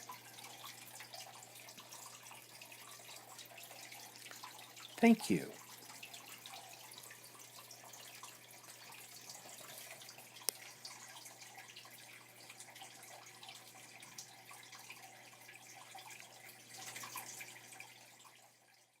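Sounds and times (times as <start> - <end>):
water trickling and dripping: 0.0 - 19.0
small ticks: 9.6 - 11.2.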